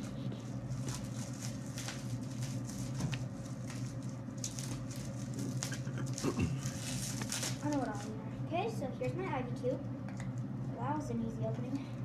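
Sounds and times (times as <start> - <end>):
low background hum: 0.0 - 12.0
packaging rustling and clicking: 0.8 - 8.1.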